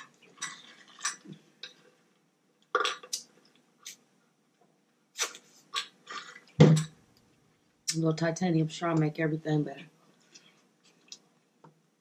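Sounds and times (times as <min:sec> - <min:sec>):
sipping through a straw: 0:05.2 - 0:06.4.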